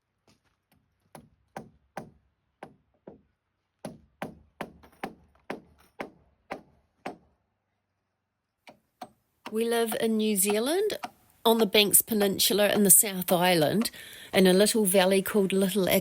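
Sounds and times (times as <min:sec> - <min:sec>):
hammer striking timber: 0:01.1 - 0:07.3, 0:08.6 - 0:09.7, 0:10.4 - 0:11.2.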